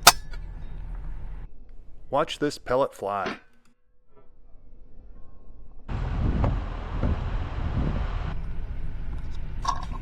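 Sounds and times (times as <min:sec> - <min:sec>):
outdoor background rumble and hiss: 0:00.0 - 0:03.2, 0:05.8 - 0:10.0.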